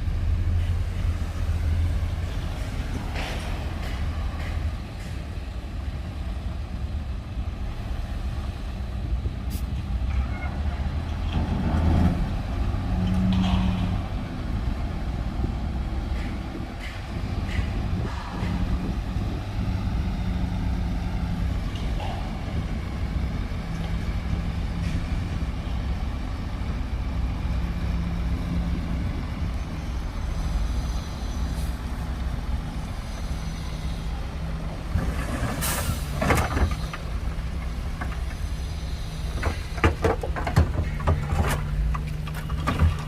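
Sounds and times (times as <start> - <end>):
diesel machinery droning: 0.0 - 43.0.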